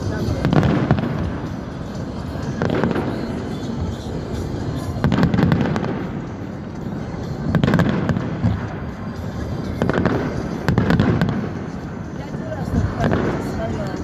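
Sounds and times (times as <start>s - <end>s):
deep rolling echo: 0.0s - 14.0s
fireworks bursting: 0.0s - 14.0s.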